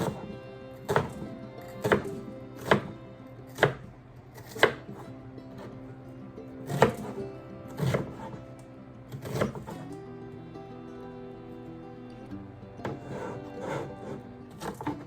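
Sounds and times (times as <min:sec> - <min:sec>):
knife chopping on cutting board: 0:00.0 - 0:05.7, 0:06.7 - 0:08.4, 0:09.1 - 0:09.8, 0:12.8 - 0:15.0.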